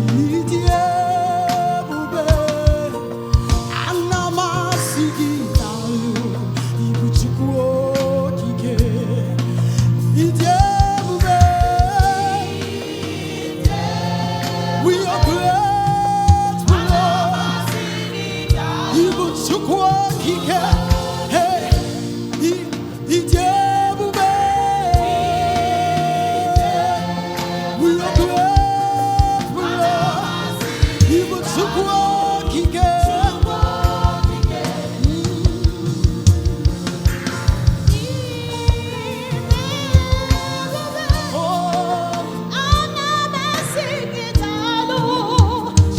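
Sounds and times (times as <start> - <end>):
choir singing gospel: 0.0 - 45.9
lead voice singing with vibrato: 0.0 - 45.9
low drum beats: 9.9 - 41.5.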